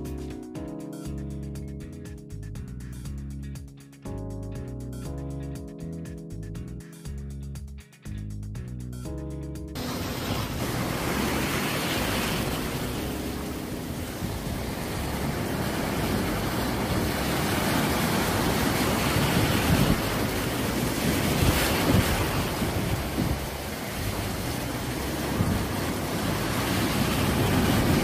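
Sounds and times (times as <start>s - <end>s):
ocean surf washing onto beach: 9.8s - 28.0s
wind rumbling on microphone: 9.8s - 28.0s.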